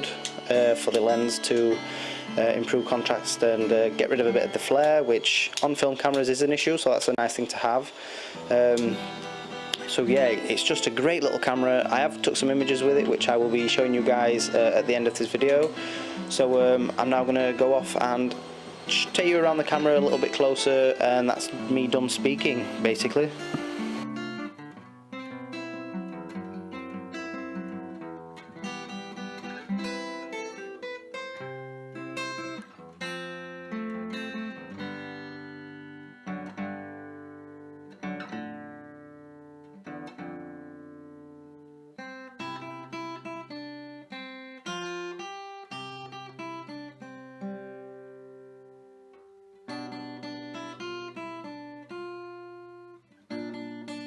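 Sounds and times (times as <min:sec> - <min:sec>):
plucked acoustic guitar melody: 0:00.0 - 0:54.0.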